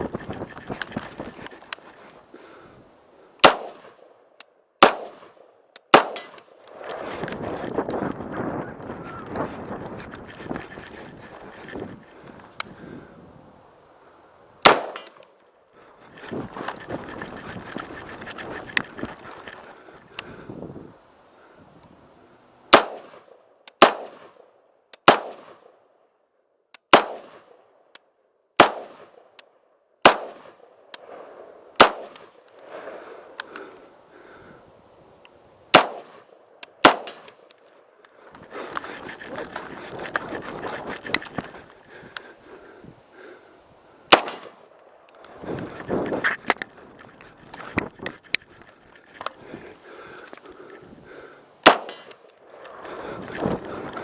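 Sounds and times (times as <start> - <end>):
rifle shots: 3.4 - 4.1, 4.8 - 6.6, 14.6 - 15.2, 22.7 - 24.4, 25.0 - 25.7, 26.9 - 27.5, 28.6 - 29.2, 30.0 - 32.4, 35.7 - 37.5, 44.1 - 44.7, 51.6 - 52.3.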